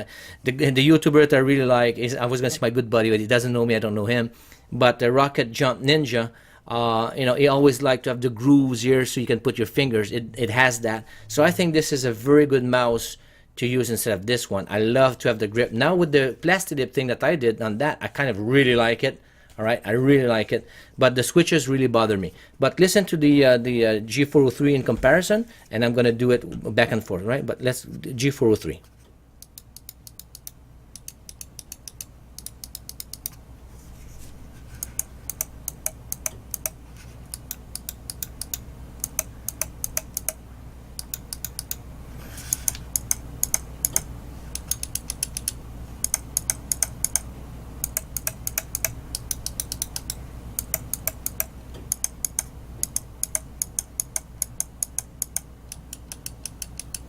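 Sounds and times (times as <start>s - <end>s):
loud clacky mouse clicks: 42.5s - 57.0s.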